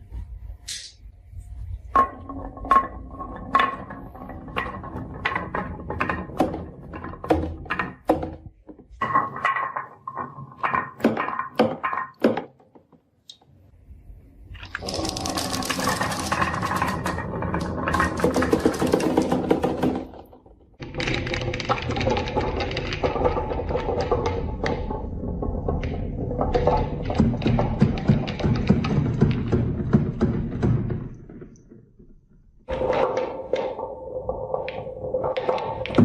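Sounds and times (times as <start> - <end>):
marbles clacking on wooden track: 1.9 - 13.0, 14.6 - 36.0
marbles rattling together: 14.6 - 20.0.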